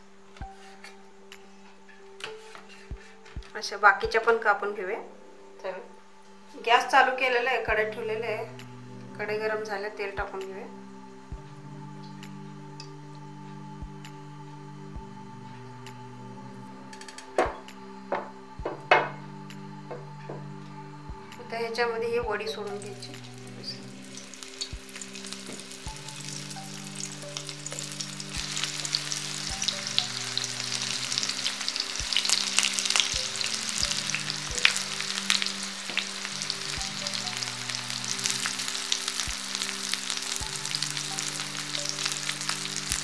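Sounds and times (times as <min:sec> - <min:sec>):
slices frying in hot oil: 0:22.7 - 0:43.0.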